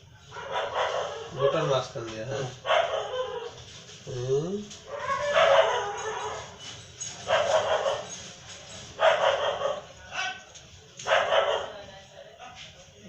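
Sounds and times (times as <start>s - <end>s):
dog barking: 0.3s - 1.6s, 2.6s - 3.6s, 4.9s - 6.6s, 7.2s - 8.2s, 8.9s - 11.8s.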